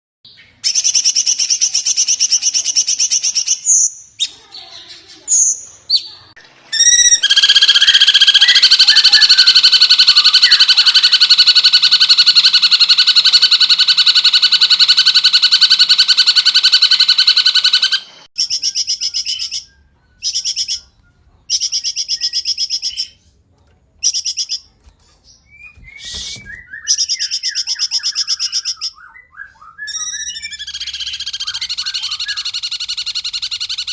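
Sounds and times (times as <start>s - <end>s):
songbird trilling: 5.3s - 23.2s, 25.5s - 33.9s.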